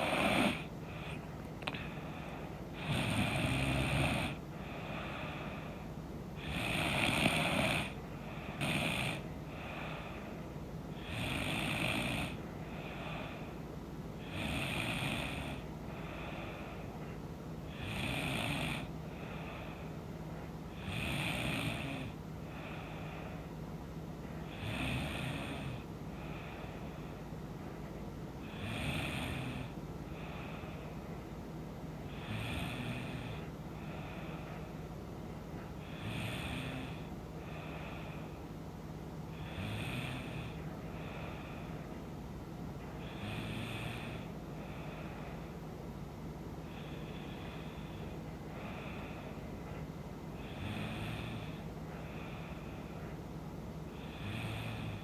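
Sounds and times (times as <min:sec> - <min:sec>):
woman snoring: 0:00.0 - 0:05.8, 0:06.4 - 0:10.3, 0:10.9 - 0:13.5, 0:14.2 - 0:16.6, 0:17.7 - 0:19.8, 0:20.7 - 0:23.0, 0:24.5 - 0:26.7, 0:28.4 - 0:30.7, 0:32.1 - 0:34.6, 0:35.8 - 0:38.2, 0:39.3 - 0:41.7, 0:43.0 - 0:45.4, 0:50.4 - 0:53.1, 0:53.9 - 0:55.0.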